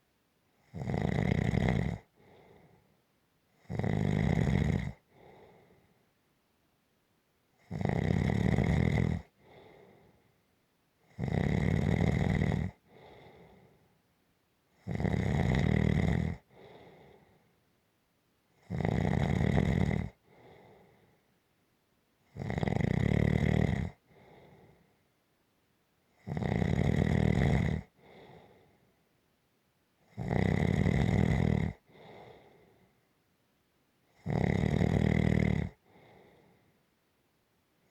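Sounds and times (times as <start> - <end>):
person snoring: 0.7 - 2.7, 3.6 - 5.5, 7.7 - 9.9, 11.2 - 13.6, 14.8 - 17.2, 18.6 - 20.9, 22.4 - 24.6, 26.2 - 28.5, 30.1 - 32.6, 34.2 - 36.4.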